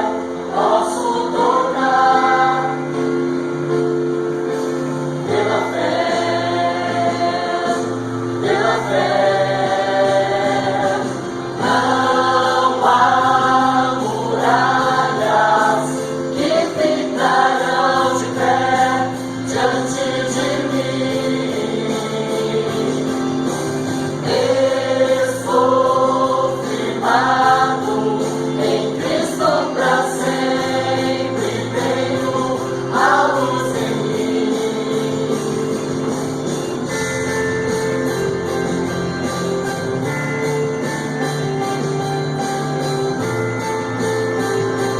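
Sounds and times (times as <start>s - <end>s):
group singing gospel song: 0.0s - 3.5s, 4.7s - 37.0s
held accompaniment notes: 0.0s - 44.9s.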